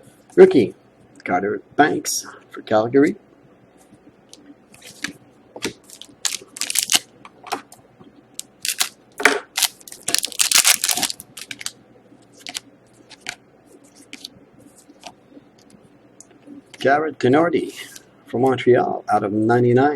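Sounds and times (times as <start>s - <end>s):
packaging crinkling: 4.8s - 7.1s, 8.4s - 13.4s
cards and packaging clicking: 5.9s - 7.1s, 8.4s - 8.9s, 9.6s - 11.8s.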